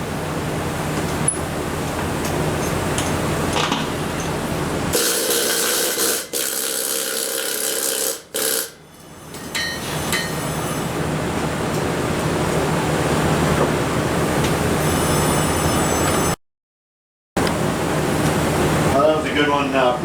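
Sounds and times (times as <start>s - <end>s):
welding arc crackling: 5.0s - 8.8s.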